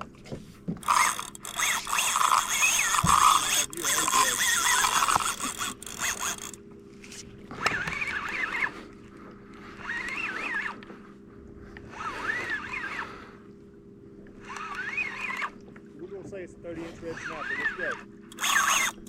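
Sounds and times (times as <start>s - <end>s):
steady low hum: 0.0s - 19.0s
fishing reel whining: 0.8s - 9.0s, 9.7s - 10.9s, 11.8s - 13.5s, 14.3s - 15.7s, 16.8s - 19.0s.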